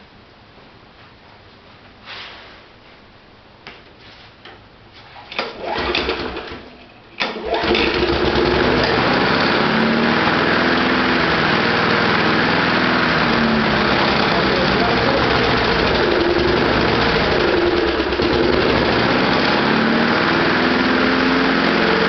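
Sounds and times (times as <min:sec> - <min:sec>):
lawnmower engine starting and running: 0:05.1 - 0:22.0.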